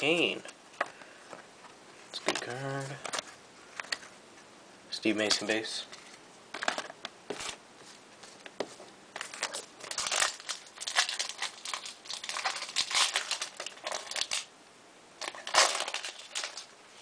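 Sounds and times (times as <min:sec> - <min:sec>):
card pack crinkling and rustling: 0:02.1 - 0:04.1, 0:05.2 - 0:14.5, 0:15.2 - 0:16.7.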